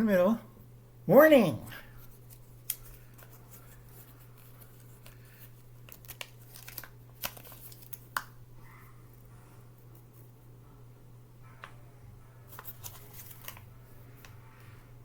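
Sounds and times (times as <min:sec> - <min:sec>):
low steady hum: 0:00.0 - 0:15.0
packaging crinkling: 0:02.1 - 0:08.3, 0:12.5 - 0:14.3.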